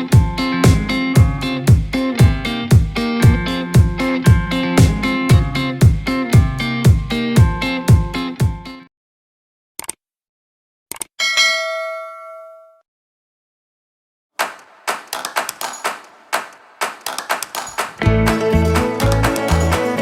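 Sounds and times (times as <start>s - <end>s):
bell-like ding: 11.2s - 12.8s.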